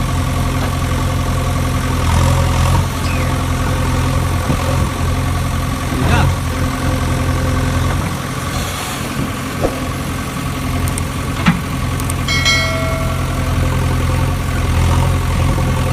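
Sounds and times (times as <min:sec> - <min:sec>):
brief high tone: 0:12.3 - 0:14.2.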